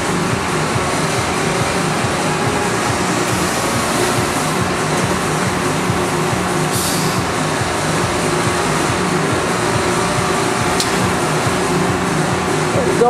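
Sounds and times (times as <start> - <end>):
milling machine mechanical hum: 0.0 - 13.0
short hiss: 6.7 - 7.2.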